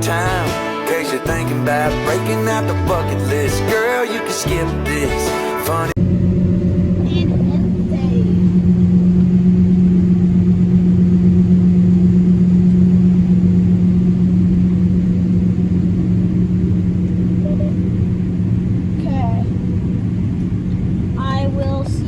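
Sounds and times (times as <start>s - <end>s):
combine harvester running: 5.7s - 21.8s.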